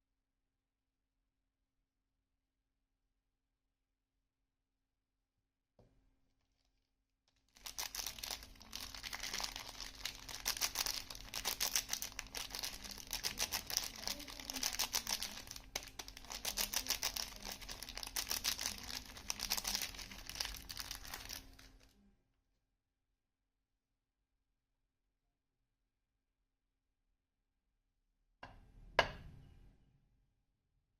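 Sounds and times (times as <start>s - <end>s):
packaging crinkling: 7.3s - 21.9s.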